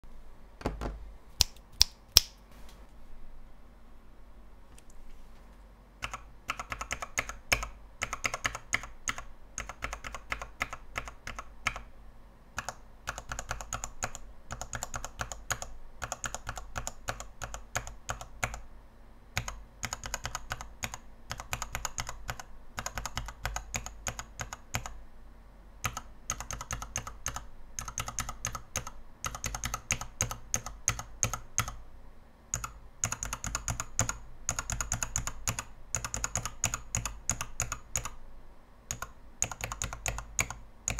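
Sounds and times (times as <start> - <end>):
mechanical keyboard keystrokes clacking: 6.0 - 11.8, 12.6 - 18.6, 19.4 - 25.0, 25.8 - 31.8, 32.6 - 38.2, 38.9 - 40.9.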